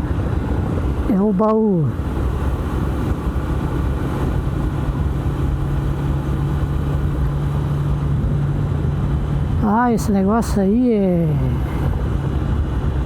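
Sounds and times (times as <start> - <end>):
wind and road noise: 0.0 - 13.0
motorcycle engine running: 1.9 - 9.3.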